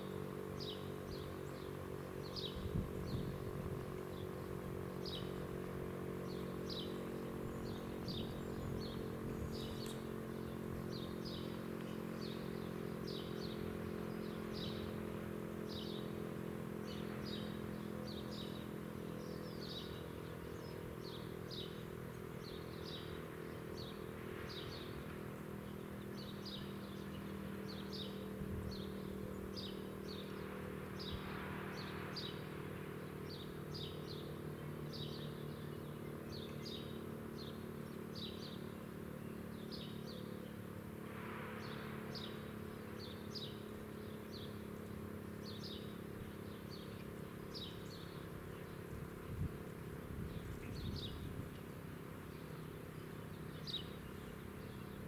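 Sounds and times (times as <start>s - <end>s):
steady low hum: 0.0s - 55.0s
small bird chirping: 6.2s - 15.0s, 41.6s - 55.0s.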